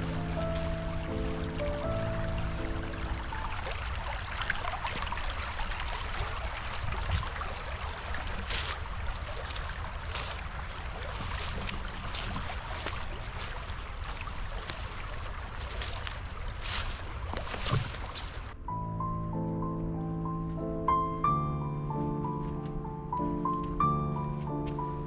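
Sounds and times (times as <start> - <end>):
background music: 0.0 - 3.8, 18.6 - 25.0
low rumble: 0.0 - 4.1, 18.6 - 25.0.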